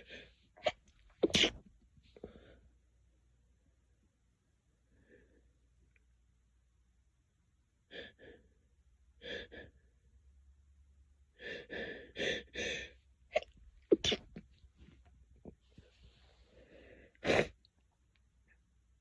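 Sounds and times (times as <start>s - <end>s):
person sneezing: 0.6s - 1.6s, 13.3s - 14.4s, 17.2s - 17.6s.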